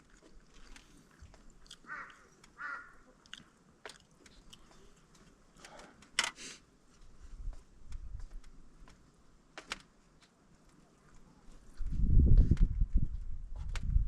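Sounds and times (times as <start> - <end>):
person chewing food: 0.0 - 5.7.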